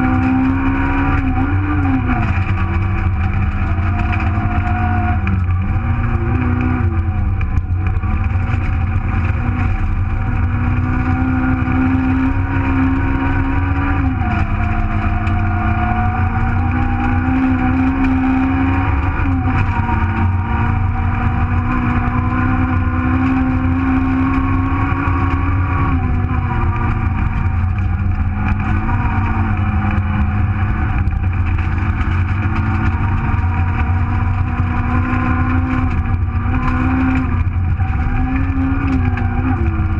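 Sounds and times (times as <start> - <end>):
low rumble: 0.0 - 39.9
rally car engine accelerating: 0.0 - 39.9.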